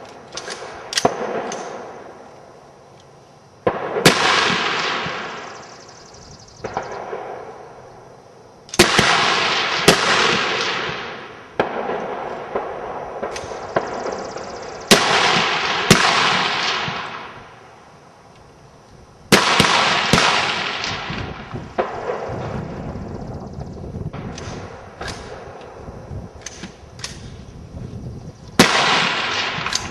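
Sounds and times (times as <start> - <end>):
rifle shots echoing: 0.3 - 2.2, 3.6 - 5.7, 6.6 - 7.8, 8.7 - 17.7, 19.3 - 22.6, 24.1 - 25.8, 28.6 - 29.9.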